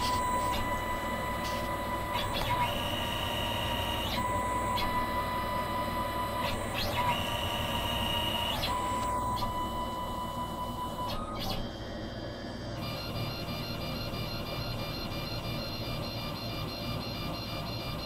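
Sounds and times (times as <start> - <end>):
stepper motors whining: 0.0 - 11.7.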